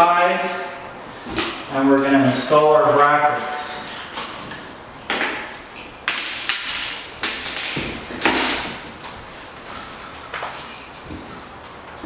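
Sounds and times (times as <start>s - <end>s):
hard parts clacking: 1.4s - 9.1s
short scrape: 8.2s - 10.0s.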